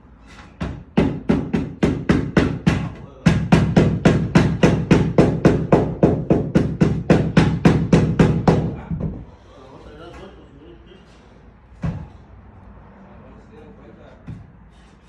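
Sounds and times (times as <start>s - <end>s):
rapid hammering: 0.4s - 9.2s.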